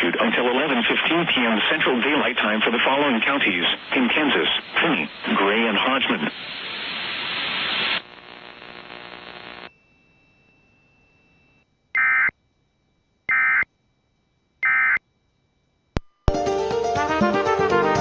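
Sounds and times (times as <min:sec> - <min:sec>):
radio static hiss: 0:00.0 - 0:09.8.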